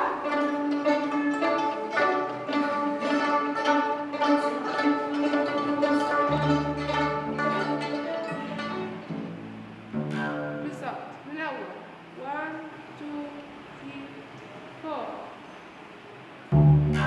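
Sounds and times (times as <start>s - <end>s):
plucked string notes: 0.0s - 11.3s, 16.5s - 17.0s
low sustained bass line: 4.4s - 11.0s, 16.5s - 17.0s.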